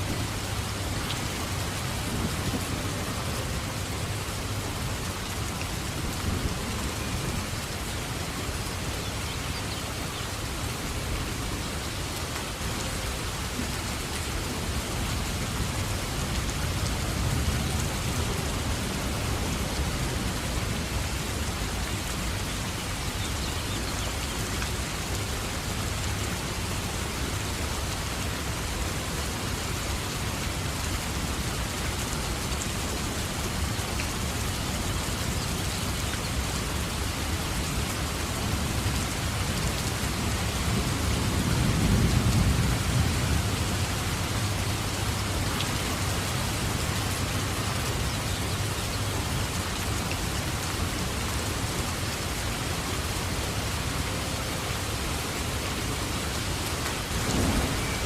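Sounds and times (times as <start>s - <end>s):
steady rain: 0.0s - 58.0s
thunder rumbling: 57.1s - 58.0s.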